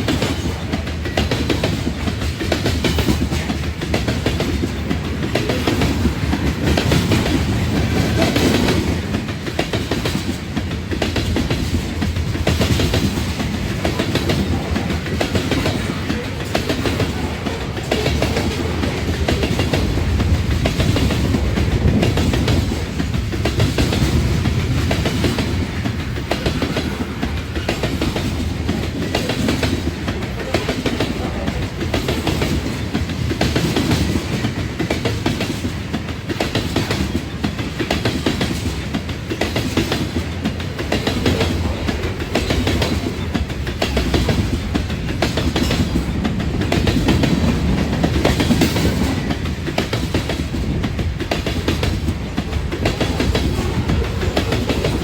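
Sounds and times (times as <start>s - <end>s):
train rumble: 0.0s - 55.0s
train wheels clacking: 0.0s - 55.0s.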